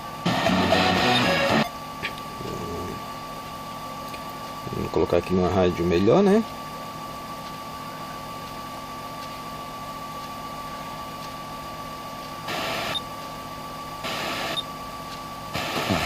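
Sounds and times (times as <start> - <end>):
thin steady whine: 0.0 - 16.0
radio static hiss: 0.2 - 3.2, 12.4 - 13.0, 14.0 - 14.7, 15.5 - 16.0
bursts of radio static: 14.0 - 14.6, 15.5 - 16.0.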